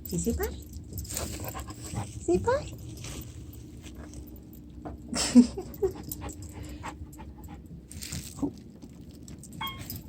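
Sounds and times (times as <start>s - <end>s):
faint steady hum: 0.0s - 10.0s
dog panting: 1.0s - 2.3s, 5.6s - 7.8s.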